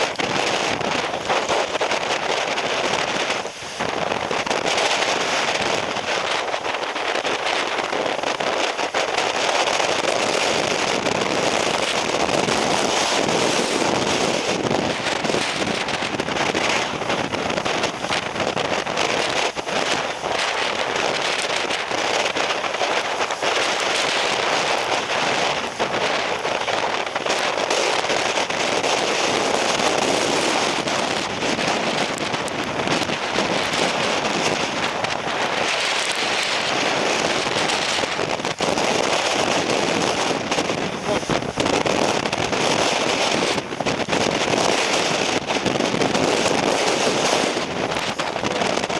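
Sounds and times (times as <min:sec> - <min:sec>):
wind and rain on microphone: 0:00.0 - 0:48.9.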